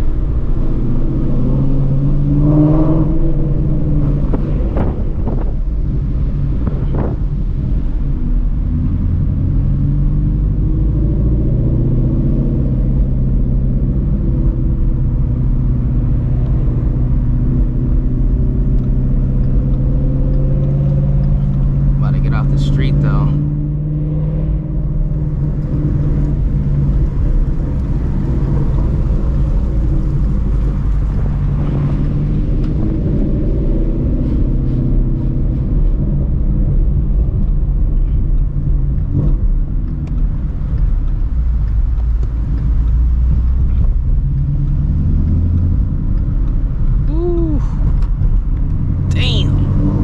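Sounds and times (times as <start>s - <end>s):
car exhaust drone: 0.0s - 50.0s.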